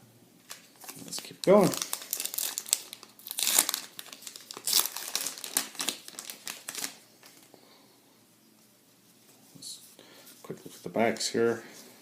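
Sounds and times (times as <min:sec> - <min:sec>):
wrapper crinkling and tearing: 0:00.5 - 0:07.5.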